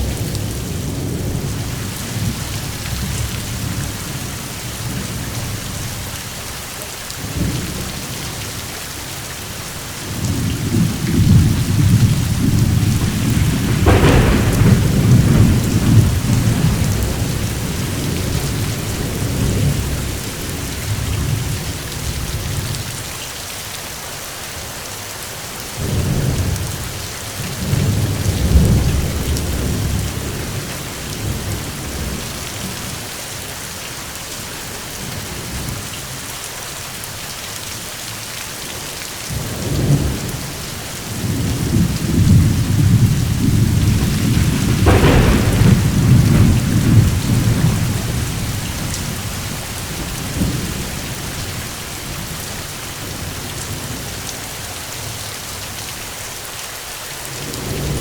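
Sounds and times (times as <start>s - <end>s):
heavy rain hissing: 0.0s - 58.0s
rolling thunder: 7.2s - 8.7s, 9.5s - 23.0s, 25.8s - 33.0s, 39.3s - 54.2s.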